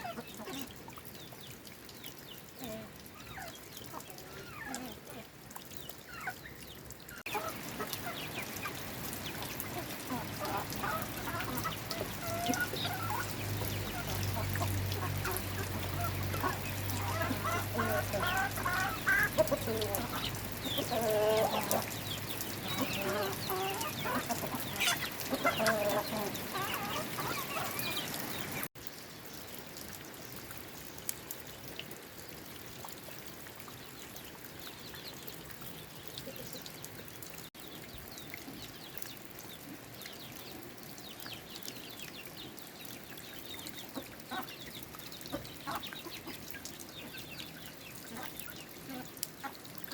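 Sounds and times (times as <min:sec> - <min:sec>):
chickens clucking: 0:07.2 - 0:28.7, 0:45.3 - 0:47.4.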